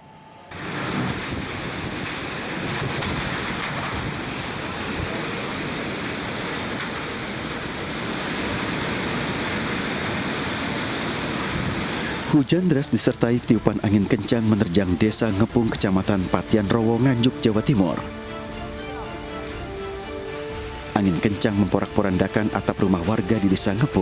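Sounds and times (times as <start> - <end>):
strong wind: 0.5 - 12.4
heavy rain: 0.5 - 24.0.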